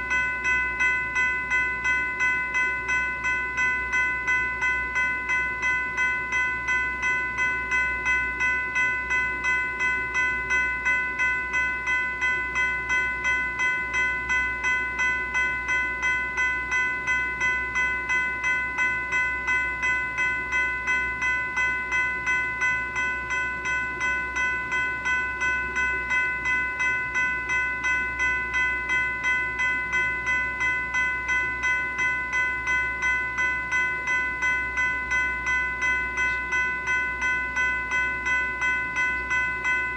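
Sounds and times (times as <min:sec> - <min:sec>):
electronic crossing bell ringing: 0:00.0 - 0:39.9.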